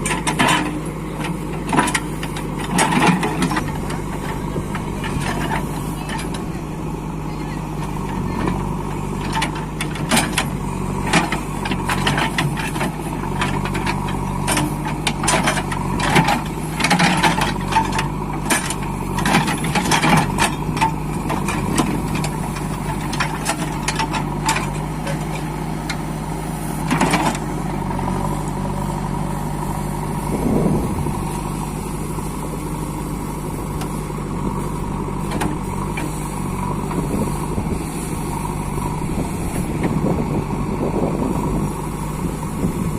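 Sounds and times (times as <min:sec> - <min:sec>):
backhoe engine running: 0:00.0 - 0:42.9
constant whine: 0:00.0 - 0:42.9.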